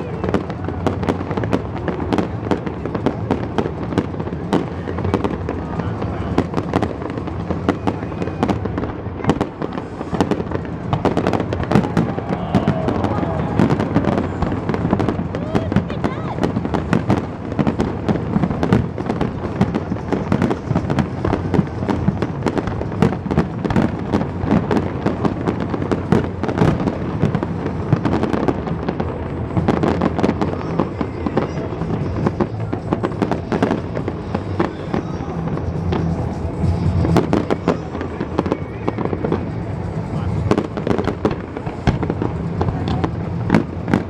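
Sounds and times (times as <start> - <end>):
fireworks bursting and crackling: 0.0 - 44.0
music soundtrack: 33.4 - 43.9.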